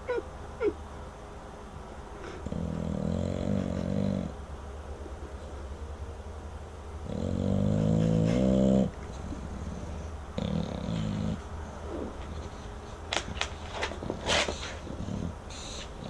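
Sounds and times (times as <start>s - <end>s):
dog snoring: 2.2s - 4.4s, 7.0s - 13.0s, 13.8s - 16.0s.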